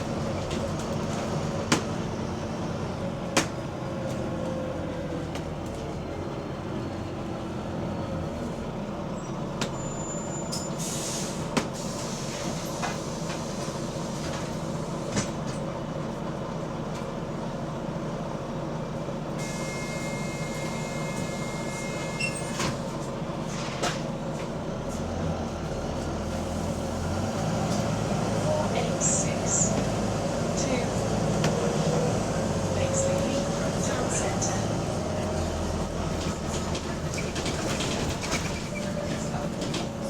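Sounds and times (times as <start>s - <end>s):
bus engine running: 0.0s - 40.0s
brief air hiss: 10.8s - 13.0s.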